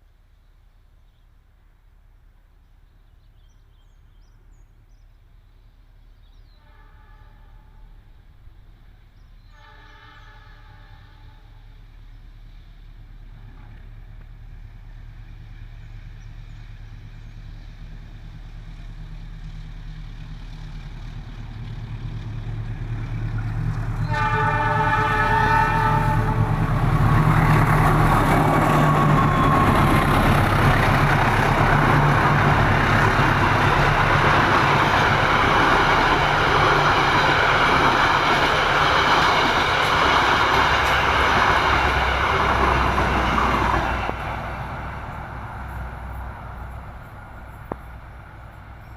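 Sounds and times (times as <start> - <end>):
diesel locomotive engine rumble: 0.0 - 48.9
train wheel and rail noise: 4.0 - 48.9
locomotive horn: 6.6 - 7.9, 9.5 - 11.6, 24.0 - 32.8.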